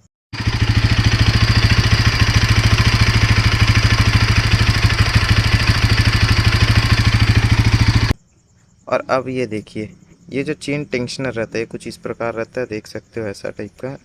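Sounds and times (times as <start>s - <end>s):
motorcycle engine idling: 0.4s - 8.2s.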